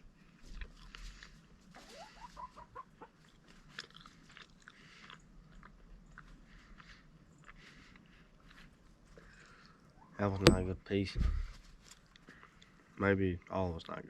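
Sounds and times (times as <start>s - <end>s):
person chewing: 0.4s - 1.6s, 3.2s - 8.8s
chicken clucking: 1.7s - 3.2s.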